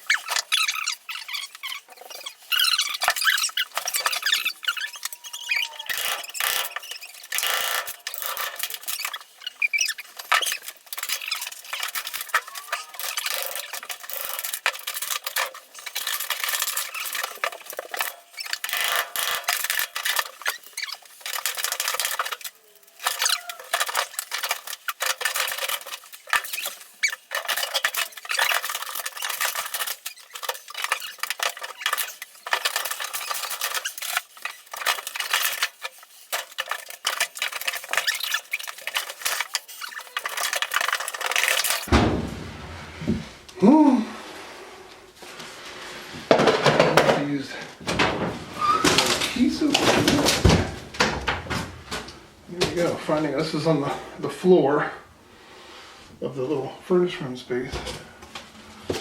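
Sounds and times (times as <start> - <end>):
short squeaks: 0.0 - 41.9, 48.0 - 51.6
building material scraping and clattering: 0.0 - 54.8.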